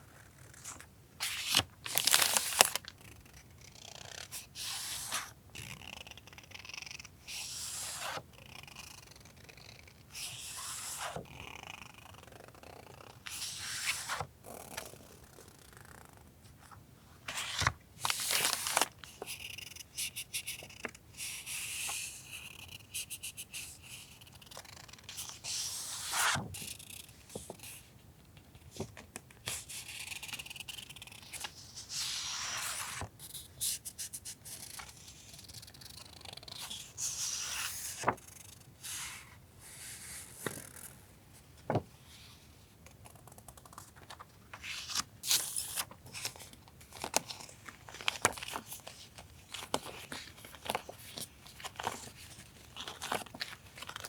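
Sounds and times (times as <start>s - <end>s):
packaging rustling and crinkling: 1.4s - 2.9s.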